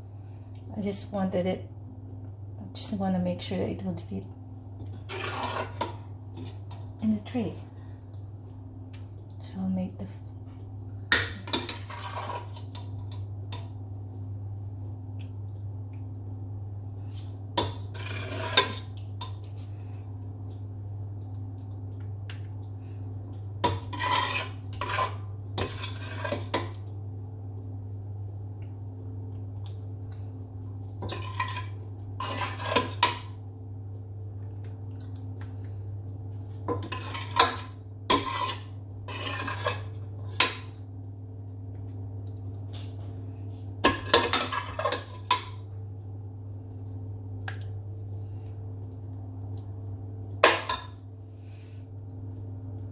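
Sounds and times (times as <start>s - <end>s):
steady low hum: 0.0s - 52.9s
utensil scraping and clinking on pan: 5.1s - 6.0s, 11.1s - 12.8s, 23.6s - 26.6s, 31.0s - 33.3s, 36.7s - 40.7s, 43.8s - 45.5s.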